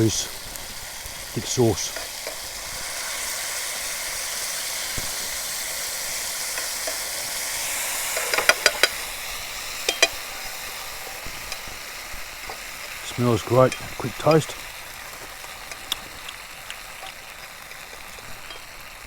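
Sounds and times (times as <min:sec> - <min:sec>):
sauce sizzling in a pan: 0:00.0 - 0:19.0
utensil clinking against pan: 0:06.4 - 0:07.2, 0:08.1 - 0:09.0, 0:09.8 - 0:11.8, 0:16.6 - 0:18.8.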